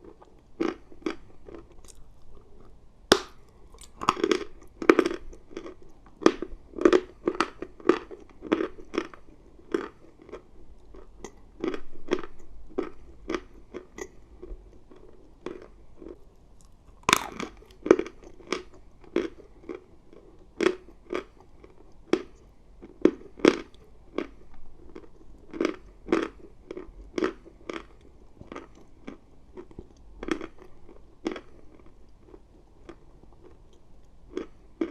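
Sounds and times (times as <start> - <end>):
chewing crunchy chalk: 0.0 - 33.6
sharp bite snap: 17.0 - 17.5.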